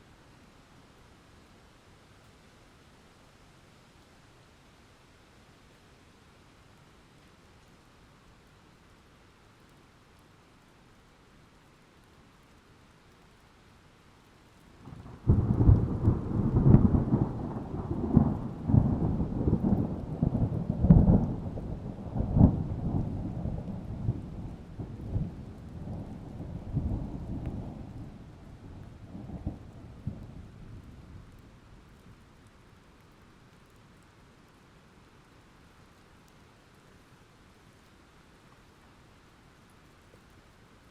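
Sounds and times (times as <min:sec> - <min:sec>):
faint rain hiss: 0:00.0 - 0:40.9
roll of thunder: 0:14.8 - 0:31.3.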